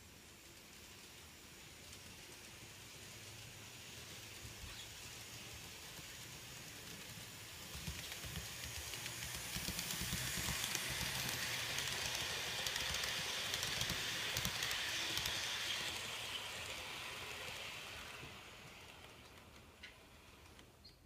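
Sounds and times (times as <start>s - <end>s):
small motor hum: 4.4s - 19.0s
wheels clicking over rail joints: 4.4s - 21.0s.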